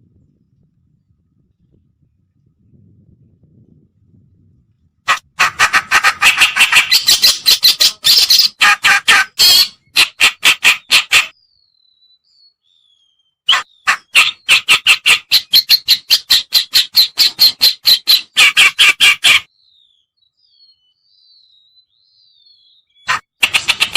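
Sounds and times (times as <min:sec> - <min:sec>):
bird harsh rasping chatter: 0:05.1 - 0:11.4, 0:13.5 - 0:19.5, 0:23.0 - 0:23.9.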